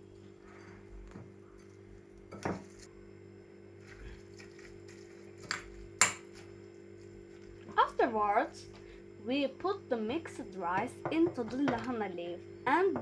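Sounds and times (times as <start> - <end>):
steady low hum: 0.0 - 13.0
rice mixing in a bowl: 3.7 - 7.7.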